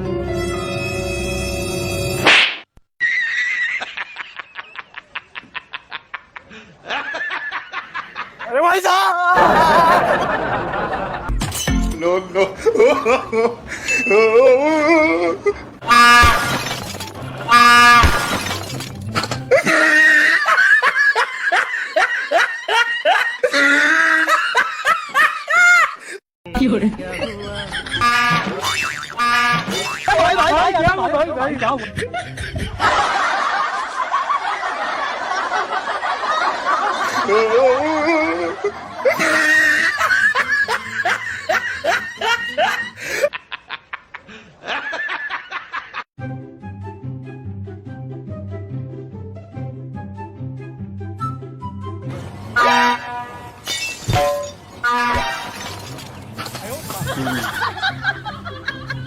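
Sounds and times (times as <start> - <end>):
snickering laughter: 9.4 - 11.3, 31.8 - 46.0, 57.0 - 59.0.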